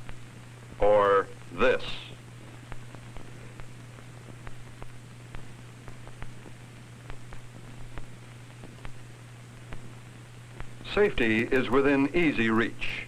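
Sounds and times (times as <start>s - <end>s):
film soundtrack hiss: 0.0s - 13.0s
low hum: 0.0s - 13.0s
clicks and pops: 2.3s - 11.9s.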